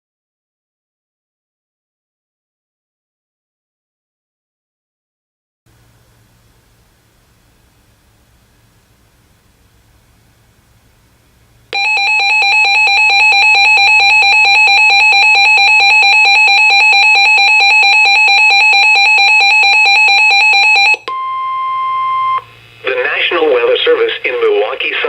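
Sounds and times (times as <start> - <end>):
steady warning tone: 11.7 - 24.9.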